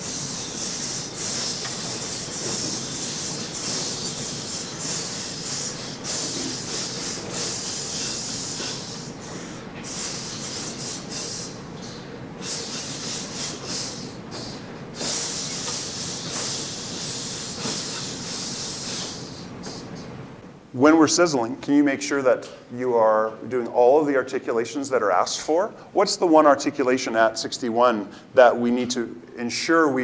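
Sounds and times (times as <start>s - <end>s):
players hissing in rhythm: 0.0s - 20.0s.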